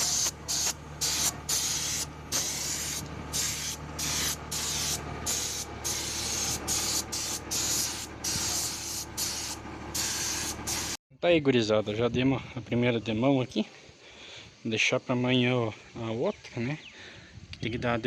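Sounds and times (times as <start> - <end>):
paint spray gun hissing: 0.0 - 11.0
steady low hum: 0.0 - 11.0.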